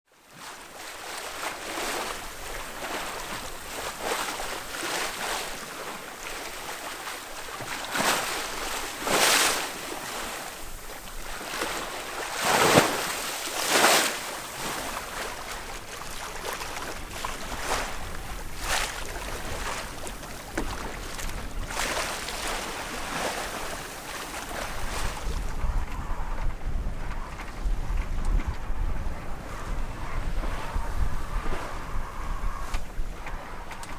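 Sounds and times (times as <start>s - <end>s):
water rushing along hull: 0.1s - 33.9s
wind rumble on microphone: 0.3s - 33.9s.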